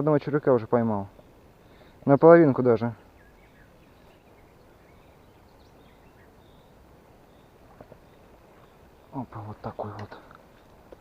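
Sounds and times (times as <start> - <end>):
quiet outdoor background noise: 0.0 - 11.0
faint bird chirps: 0.9 - 2.0, 2.7 - 10.3.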